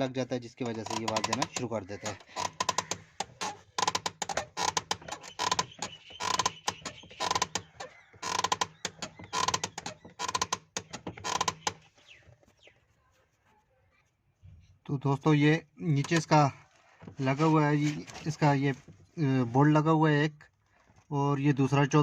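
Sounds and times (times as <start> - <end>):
clutch pedal creaking: 0.5 - 11.9.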